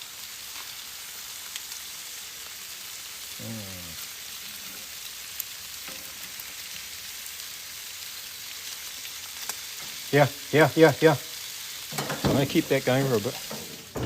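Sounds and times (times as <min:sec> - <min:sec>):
meat sizzling on a grill: 0:00.0 - 0:14.0
low falling voice: 0:03.4 - 0:04.0.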